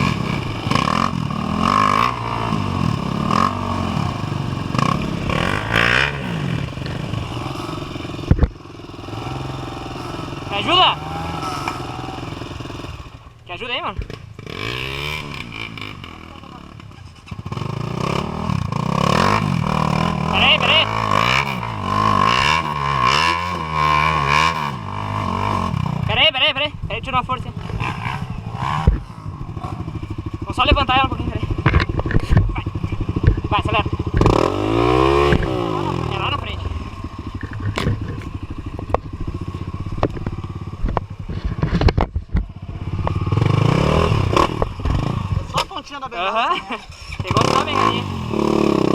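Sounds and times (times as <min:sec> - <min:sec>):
dirt bike engine revving: 0:00.0 - 0:48.9
sharp knocks and clatters: 0:31.6 - 0:33.4, 0:40.0 - 0:43.5.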